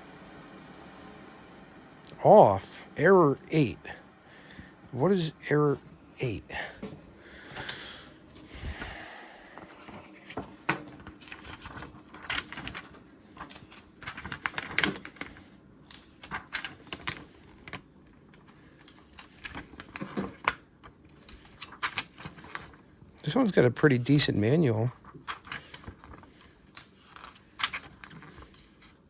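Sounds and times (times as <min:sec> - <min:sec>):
pages rustling: 0:09.6 - 0:29.0.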